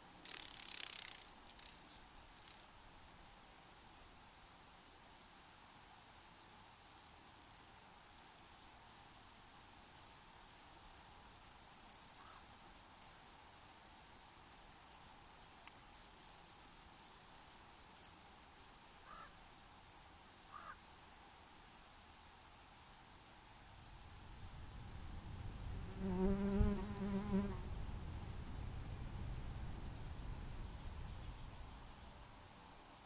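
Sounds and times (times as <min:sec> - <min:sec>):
soft hiss: 0:00.0 - 0:33.0
cricket chirping: 0:00.2 - 0:02.7, 0:05.4 - 0:24.6.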